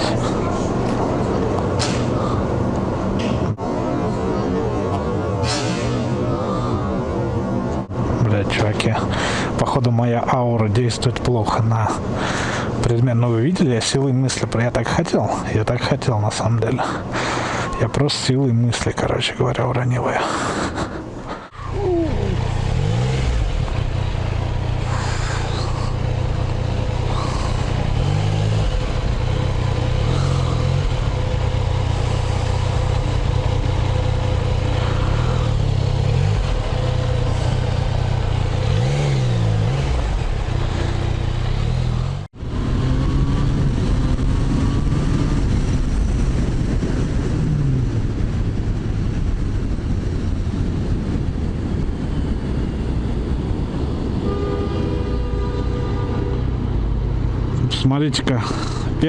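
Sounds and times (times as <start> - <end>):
motorcycle engine revving: 21.7 - 57.5.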